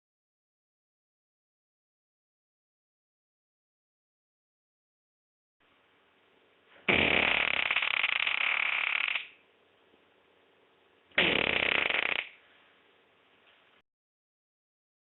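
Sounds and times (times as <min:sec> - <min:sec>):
rasping fart: 0:06.8 - 0:09.4, 0:11.2 - 0:12.4.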